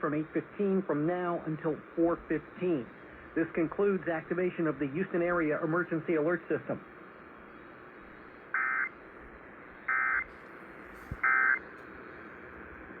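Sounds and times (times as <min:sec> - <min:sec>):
faint receiver hiss: 0:08.5 - 0:13.0.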